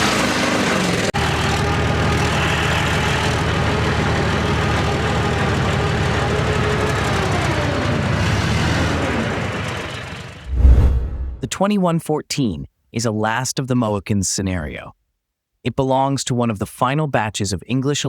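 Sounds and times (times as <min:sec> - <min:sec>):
diesel engine rumbling: 0:00.1 - 0:11.5.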